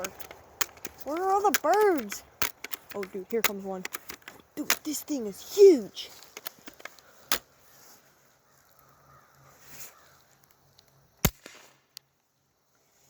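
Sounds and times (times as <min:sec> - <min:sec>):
bb gun shots: 0:11.2 - 0:11.8.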